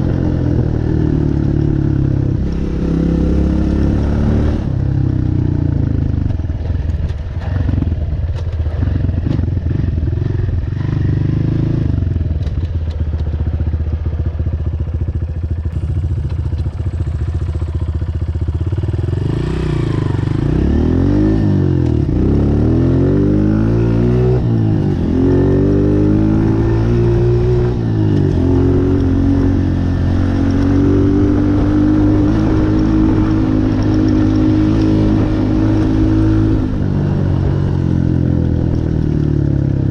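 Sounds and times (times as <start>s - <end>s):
dirt bike engine revving: 0.0s - 4.8s, 18.7s - 38.2s.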